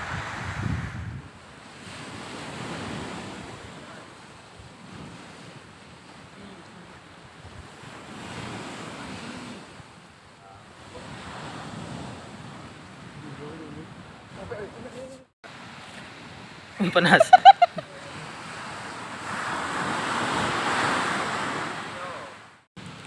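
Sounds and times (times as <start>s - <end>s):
outdoor rushing noise: 0.0s - 1.5s
wind buffeting the microphone: 0.0s - 6.2s, 7.0s - 10.0s.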